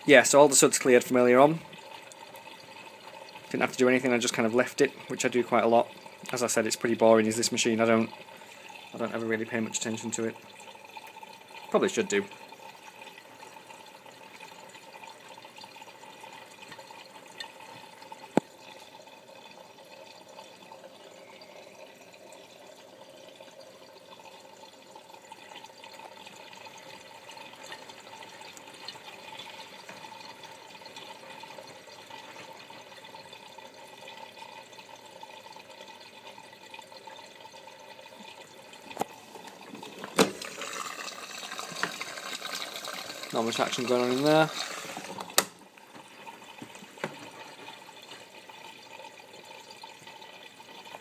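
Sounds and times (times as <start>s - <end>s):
water running into washing machine: 0.0s - 51.0s.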